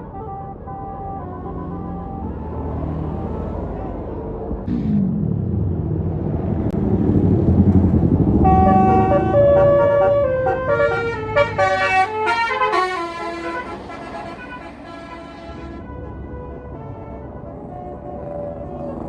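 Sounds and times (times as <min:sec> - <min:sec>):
multi-tone bus horn melody: 0:00.0 - 0:04.5, 0:08.2 - 0:19.0
bus engine rumbling: 0:00.0 - 0:19.0.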